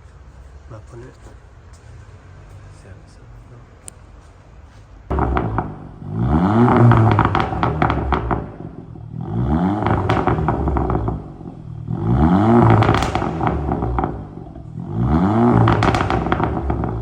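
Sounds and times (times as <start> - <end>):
car engine revving: 5.1 - 17.0
exhaust pops and crackles: 5.1 - 17.0.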